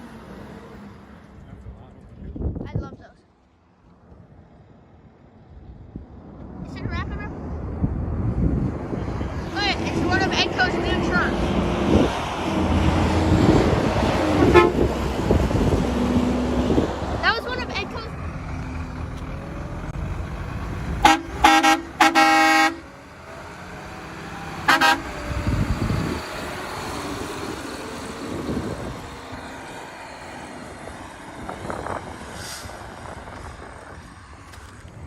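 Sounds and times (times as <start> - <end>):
road traffic passing: 0.0 - 35.0
truck air horn blasts: 14.3 - 14.9, 21.0 - 22.9, 24.6 - 25.2.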